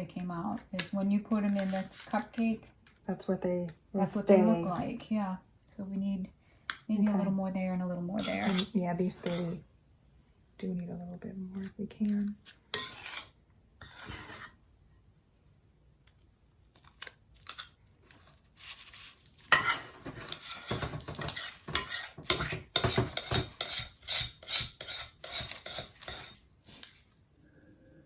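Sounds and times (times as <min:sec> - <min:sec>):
spoons scraping and clinking: 0:12.7 - 0:14.5, 0:18.6 - 0:26.9.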